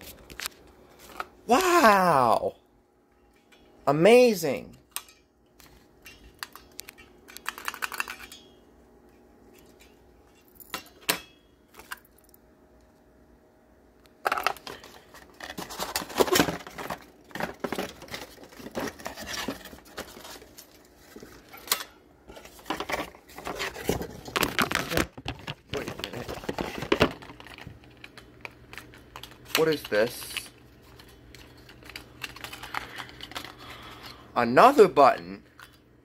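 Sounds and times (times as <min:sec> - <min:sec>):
packaging rustling and crinkling: 0:14.6 - 0:21.7, 0:22.3 - 0:34.1.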